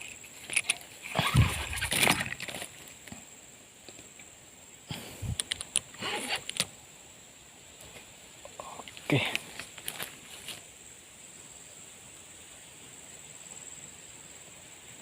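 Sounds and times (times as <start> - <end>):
fishing tackle rustling and clicking: 0.0 - 3.2, 5.2 - 6.7.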